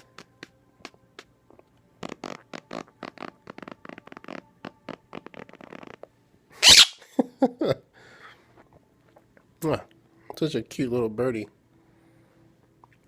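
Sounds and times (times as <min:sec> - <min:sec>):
parrot sputtering raspberry: 0:02.0 - 0:07.0.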